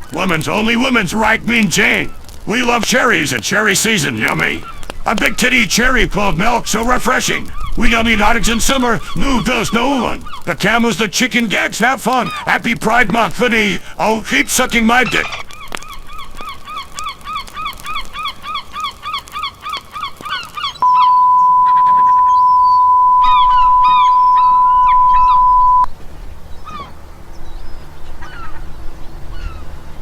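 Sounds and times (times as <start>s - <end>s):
rapid bird-like calls: 4.0s - 5.4s, 7.2s - 10.9s, 11.6s - 12.5s, 14.4s - 25.6s
faint chirps: 20.8s - 25.9s
loud steady beep tone: 20.8s - 25.9s.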